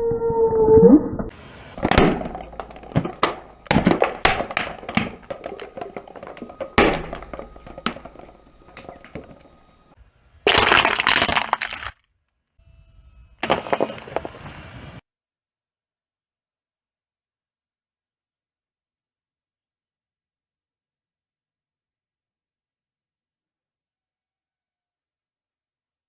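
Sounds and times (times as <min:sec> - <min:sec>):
car tyre crushing brittle objects: 0:10.4 - 0:11.9, 0:13.4 - 0:15.0.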